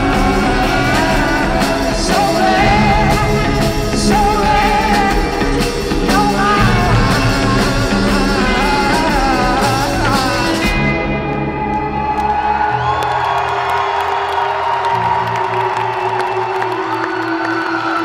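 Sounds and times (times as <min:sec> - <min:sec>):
person singing: 0:00.0 - 0:12.1
live rock band playing: 0:00.0 - 0:18.0.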